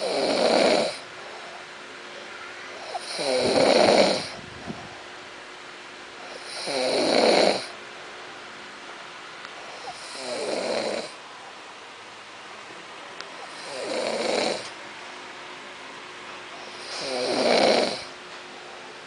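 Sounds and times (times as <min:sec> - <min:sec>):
person snoring: 0:00.0 - 0:01.0, 0:02.8 - 0:04.4, 0:06.3 - 0:07.7, 0:09.7 - 0:11.2, 0:13.4 - 0:14.7, 0:16.6 - 0:18.2.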